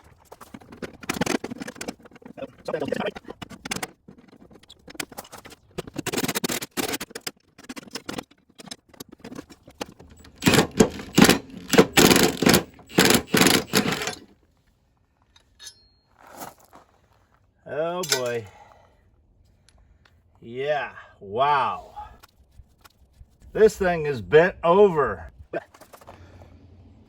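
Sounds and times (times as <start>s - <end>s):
metal clicks and scrapes: 0.0s - 14.4s, 18.0s - 18.4s
loud short tool bursts: 10.3s - 14.2s.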